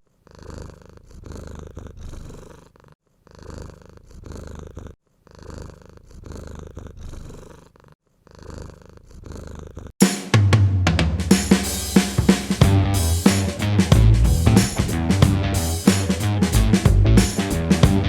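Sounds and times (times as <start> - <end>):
cat purring: 0.1 - 9.9.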